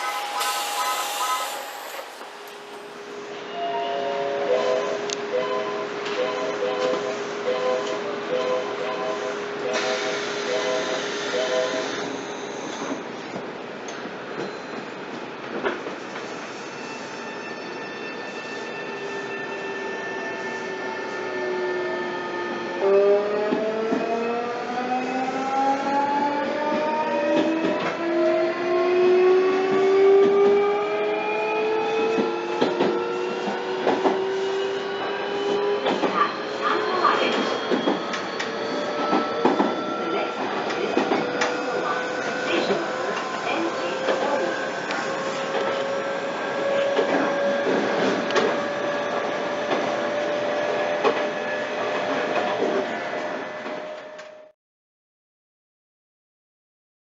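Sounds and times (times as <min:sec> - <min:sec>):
electric train motor whine: 0:00.0 - 0:03.0
electric train whine and rumble: 0:00.0 - 0:54.5.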